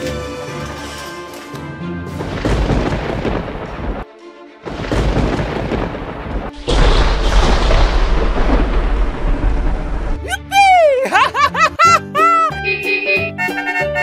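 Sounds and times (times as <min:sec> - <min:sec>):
deep rumbling boom: 0:02.3 - 0:04.0, 0:04.7 - 0:10.3.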